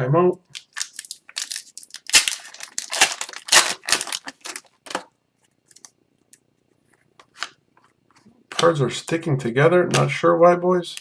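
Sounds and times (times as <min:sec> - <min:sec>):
foil wrapper crinkling and tearing: 0:00.6 - 0:04.7
cards rustling: 0:00.6 - 0:05.0.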